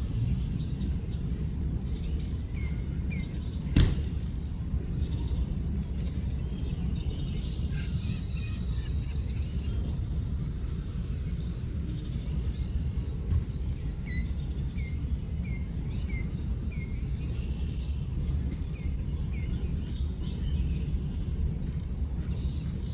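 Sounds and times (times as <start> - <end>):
songbirds chirping and warbling: 0.0 - 22.9
steady low rumble: 0.0 - 22.9.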